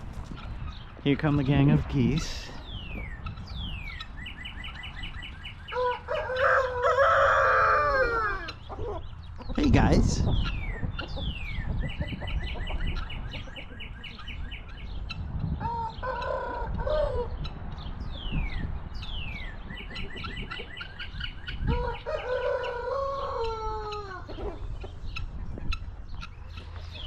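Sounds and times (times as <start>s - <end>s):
farm birds chirping: 0.0s - 27.0s
rooster crowing: 5.7s - 8.5s, 21.7s - 24.2s.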